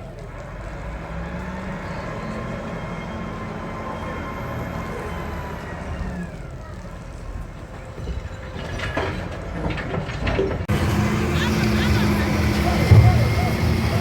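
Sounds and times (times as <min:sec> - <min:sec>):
knocks and crashes: 0:07.6 - 0:14.0
motor running: 0:10.7 - 0:14.0.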